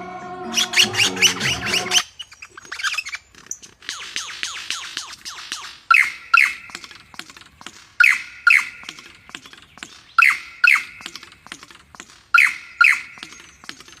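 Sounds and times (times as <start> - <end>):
bird calling sharp falling notes: 0.0 - 7.0.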